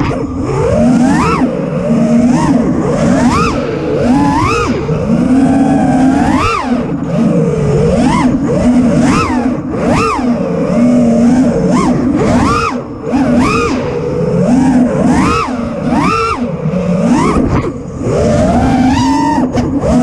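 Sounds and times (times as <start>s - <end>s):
drone motors whining: 0.0s - 20.0s.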